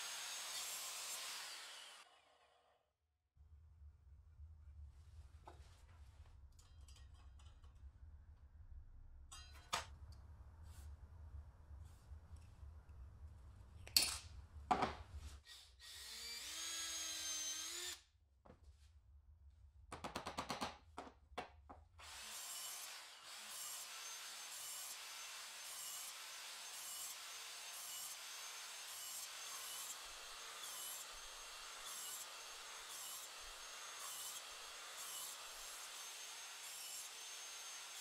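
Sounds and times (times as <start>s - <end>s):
sawing strokes on wood: 0.0s - 2.8s, 22.0s - 38.0s
small power drill whining: 15.4s - 18.0s, 22.0s - 38.0s.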